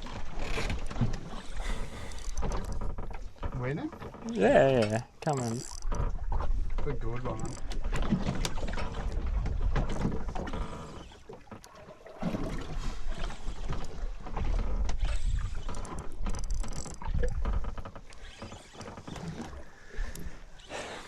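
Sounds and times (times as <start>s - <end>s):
fishing reel clicking and whirring: 1.6s - 2.9s, 4.9s - 6.1s, 7.4s - 7.8s, 15.0s - 19.4s.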